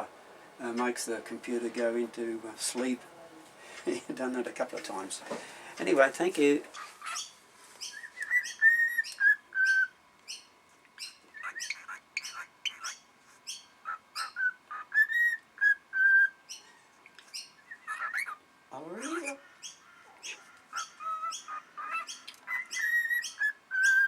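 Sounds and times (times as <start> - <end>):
cockatiel whistling: 7.1 - 16.4, 19.0 - 24.0.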